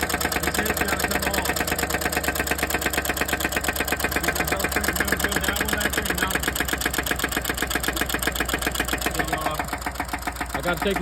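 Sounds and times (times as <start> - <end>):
car engine idling: 0.0 - 11.0
valvetrain ticking: 0.0 - 11.0.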